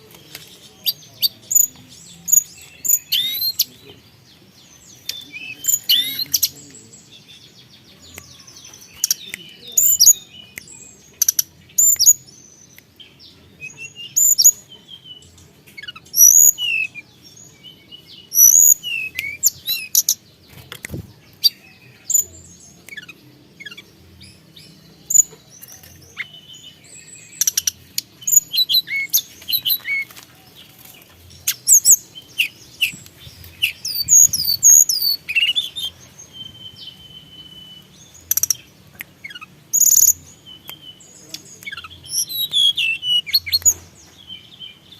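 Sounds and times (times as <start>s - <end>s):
songbird singing high whistles: 13.6s - 14.6s, 16.2s - 17.0s, 18.2s - 20.2s, 31.5s - 41.0s, 41.6s - 43.8s.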